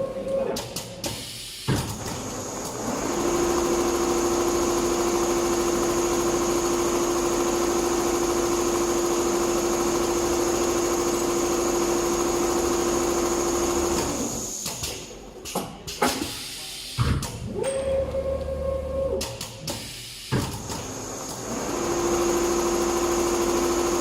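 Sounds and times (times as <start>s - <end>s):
industrial sewing machine running: 1.9s - 14.6s, 20.6s - 24.0s.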